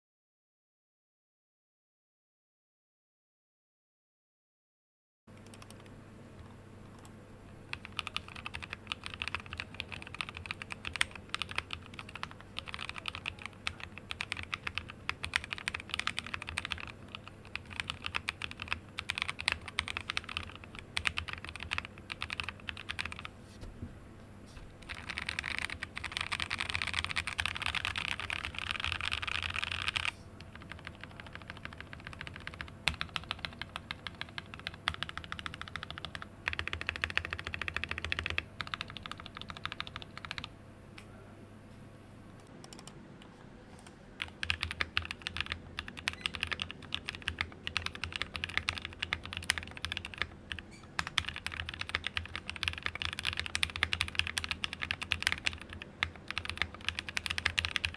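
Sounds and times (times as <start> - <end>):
mechanical keyboard typing: 5.4 - 5.9, 7.7 - 23.3, 24.8 - 40.5, 42.6 - 42.9, 43.8 - 57.9.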